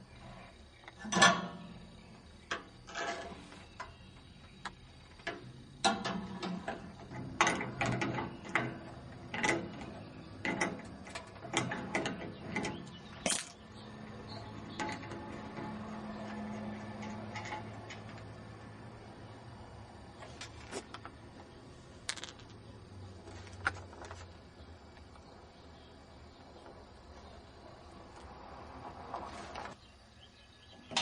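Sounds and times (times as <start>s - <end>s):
scrap metal clanking: 0.2s - 4.1s, 5.3s - 13.6s.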